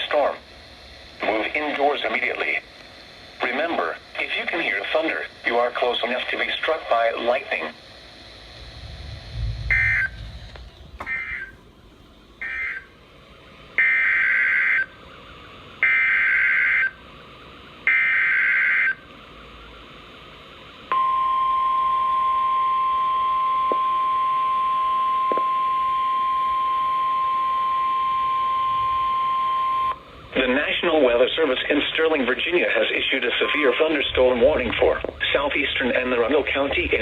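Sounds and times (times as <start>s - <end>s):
steady warning alarm tone: 0.0s - 37.0s
data bursts: 8.5s - 11.6s, 25.0s - 37.0s.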